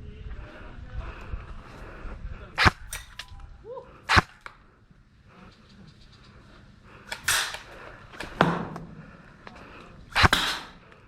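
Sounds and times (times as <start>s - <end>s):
airsoft gun shots: 4.1s - 4.5s, 7.1s - 8.9s, 10.1s - 10.9s.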